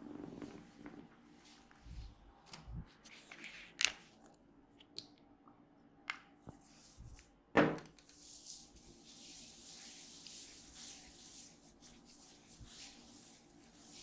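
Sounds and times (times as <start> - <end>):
hands rubbing oiled head: 8.0 - 14.0.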